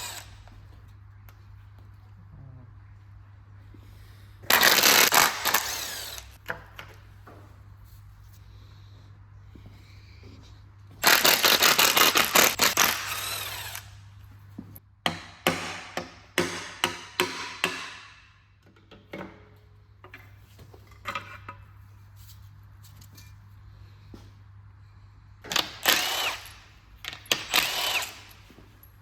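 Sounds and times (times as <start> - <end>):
power drill drilling metal: 0.0 - 0.3, 4.5 - 6.4, 11.0 - 13.9, 25.5 - 28.5.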